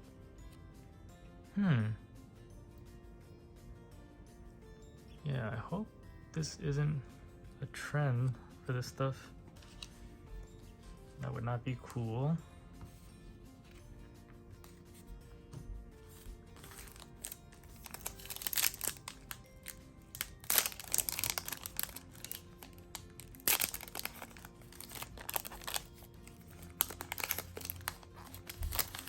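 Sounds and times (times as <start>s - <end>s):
soft background music: 0.0s - 29.0s
foil wrapper crinkling and tearing: 16.6s - 29.0s.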